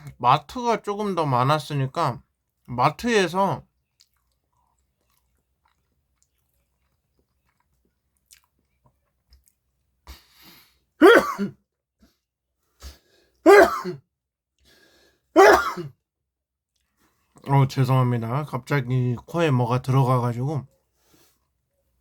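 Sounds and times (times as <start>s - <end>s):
man sneezing: 11.0s - 11.6s, 13.4s - 14.0s, 15.4s - 16.0s.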